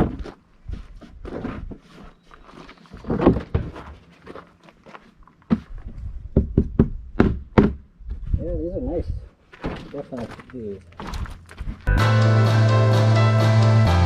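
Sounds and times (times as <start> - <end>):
sharp knocks: 6.4 - 7.8.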